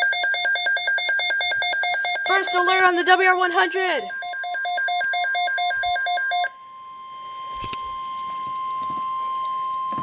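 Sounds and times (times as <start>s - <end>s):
rapid pulsing beep: 0.0s - 6.5s
steady weather radio alarm tone: 0.0s - 10.0s.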